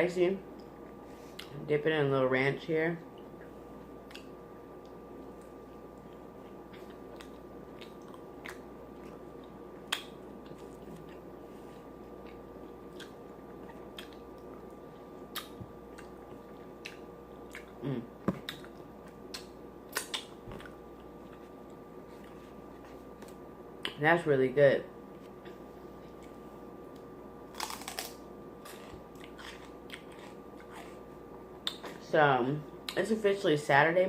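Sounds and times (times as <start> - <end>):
person chewing wetly: 3.2 - 23.2, 27.6 - 31.9.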